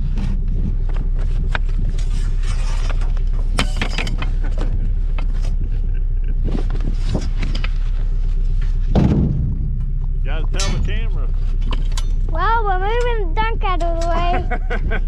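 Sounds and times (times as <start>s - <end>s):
vehicle engine running: 0.0s - 15.0s
clanks and knocks of junk: 2.7s - 5.6s, 8.8s - 12.4s.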